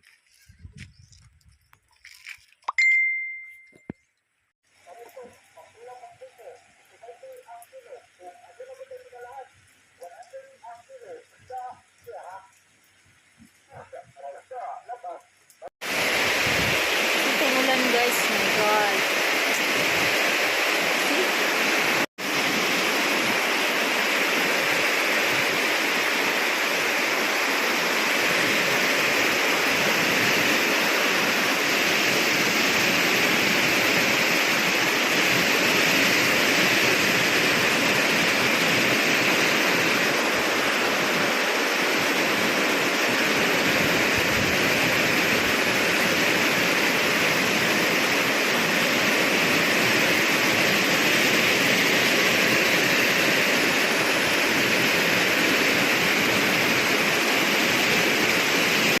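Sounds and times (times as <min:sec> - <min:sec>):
heavy rain pouring: 0:15.2 - 0:59.0.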